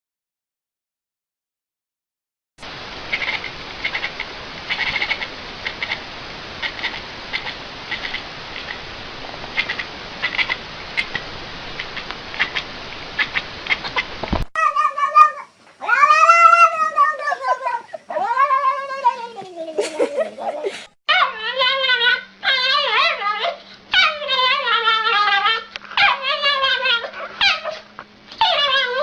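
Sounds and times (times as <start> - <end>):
steady hiss: 2.6 - 14.5
cat meowing: 3.1 - 6.0, 9.6 - 11.2, 14.6 - 19.4.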